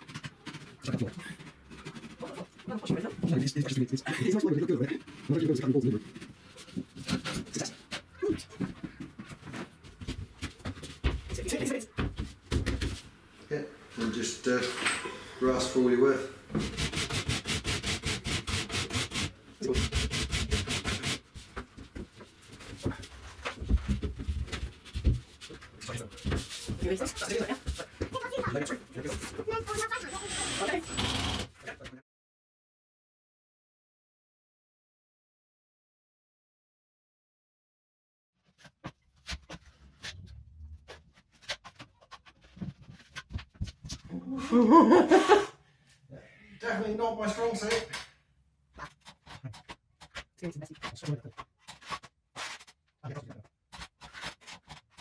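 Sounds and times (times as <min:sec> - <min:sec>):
handling noises: 0:14.5 - 0:15.3
hand rasp scraping wood: 0:16.6 - 0:21.4, 0:30.0 - 0:31.5.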